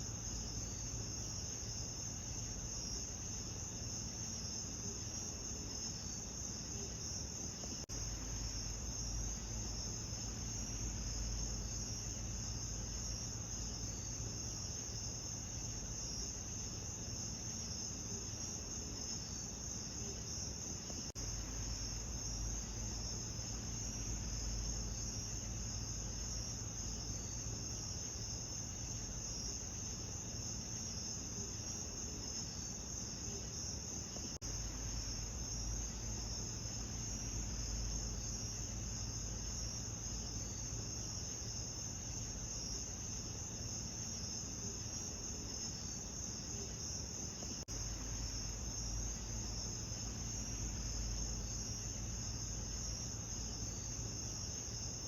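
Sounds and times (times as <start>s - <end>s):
night insects buzzing: 0.0s - 55.0s.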